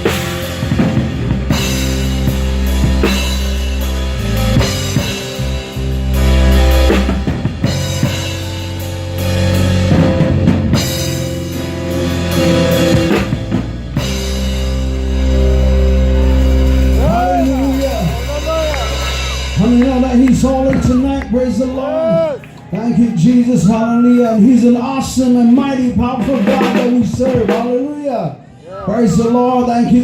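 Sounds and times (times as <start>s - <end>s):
drum kit hits: 0.0s - 21.3s, 26.1s - 27.8s
guitar: 0.0s - 27.5s
bass guitar: 0.0s - 27.7s.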